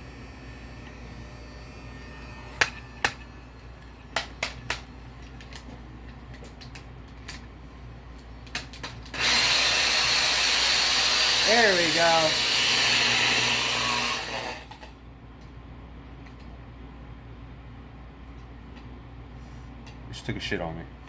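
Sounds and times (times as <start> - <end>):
sharp clicks and taps: 4.2 - 7.5
heat gun blowing: 9.1 - 14.9.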